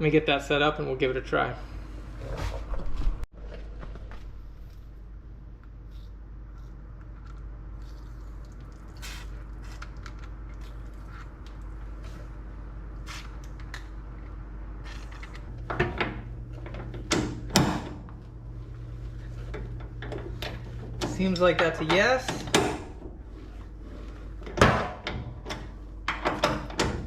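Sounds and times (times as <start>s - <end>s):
low hum: 1.5s - 27.0s
metal tools clicking and clanking: 19.5s - 22.7s.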